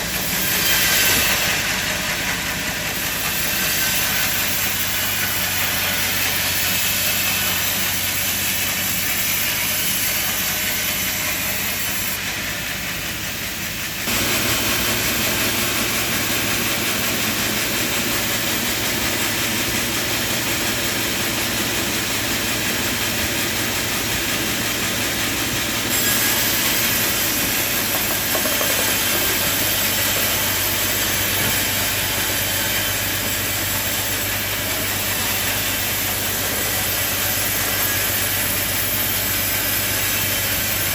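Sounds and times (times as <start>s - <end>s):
sawmill machinery hissing: 0.0s - 40.9s.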